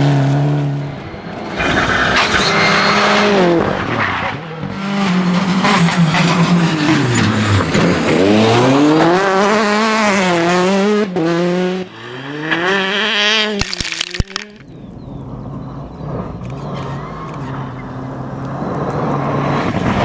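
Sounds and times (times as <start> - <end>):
rally car engine revving: 0.0 - 20.0
sharp cracks: 13.5 - 14.7.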